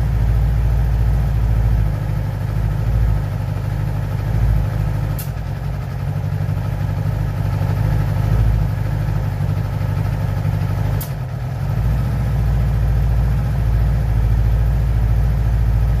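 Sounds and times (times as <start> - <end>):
motorcycle engine idling: 0.0 - 16.0
sharp click: 5.1 - 5.4, 11.0 - 11.2.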